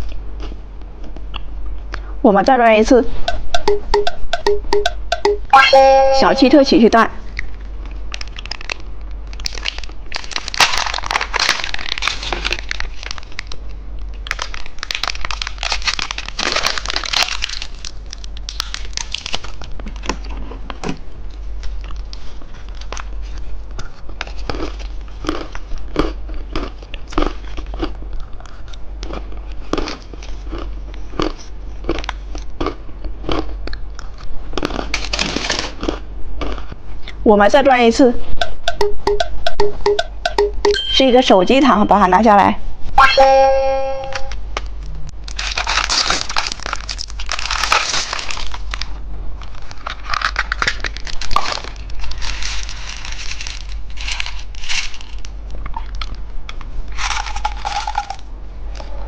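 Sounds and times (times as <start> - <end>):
plastic wrapper crinkling: 7.4 - 20.3, 45.2 - 55.4
small clicks and cracks: 7.4 - 23.1, 45.3 - 58.2.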